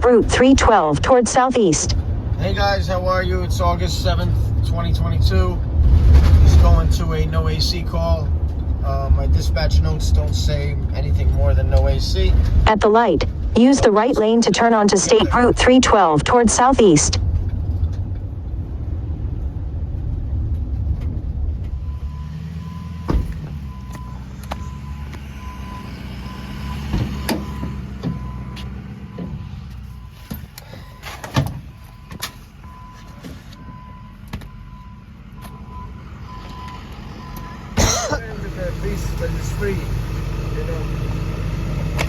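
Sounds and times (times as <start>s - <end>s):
vehicle engine and road rumble: 0.0s - 42.0s.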